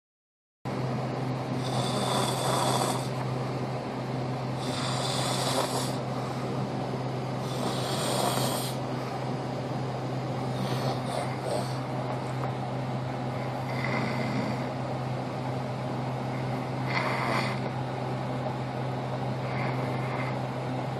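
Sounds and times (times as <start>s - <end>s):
steady low hum: 0.7s - 20.9s
man snoring: 1.6s - 3.2s, 4.6s - 6.0s, 7.4s - 8.8s, 10.5s - 11.9s, 13.4s - 14.8s, 16.8s - 17.7s, 19.4s - 20.4s.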